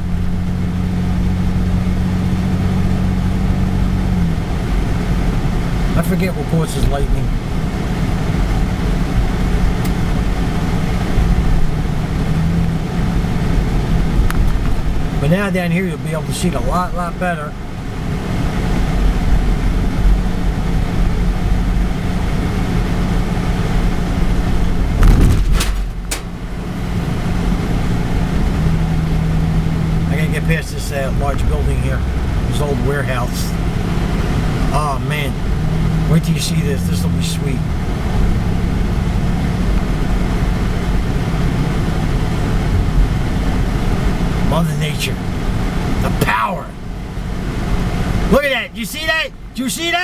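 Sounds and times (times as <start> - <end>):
constant low hum: 0.0 - 49.6
road and engine rumble: 0.0 - 50.0
brief loud thump: 25.0 - 26.3
sharp clicks: 25.0 - 26.4.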